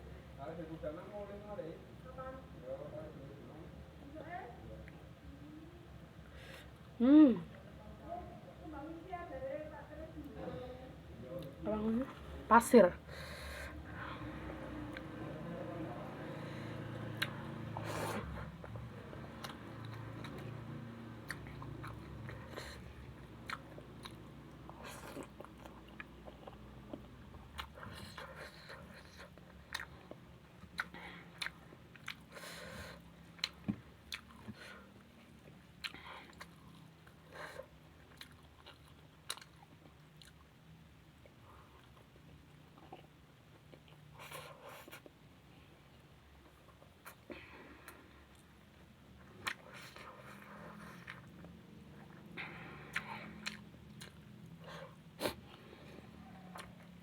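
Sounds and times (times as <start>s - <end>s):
person chewing food: 16.8s - 45.2s, 45.9s - 57.0s.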